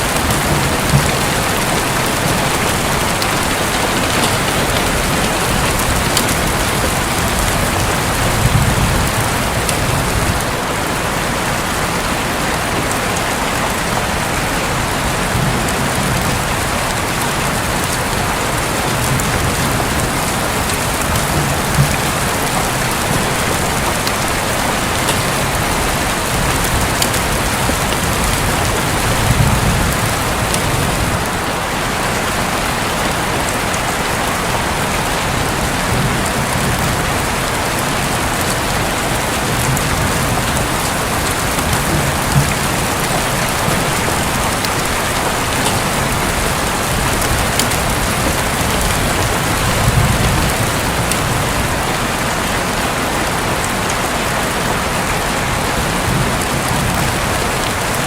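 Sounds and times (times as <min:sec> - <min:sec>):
heavy rain drumming on a roof: 0:00.0 - 0:58.0.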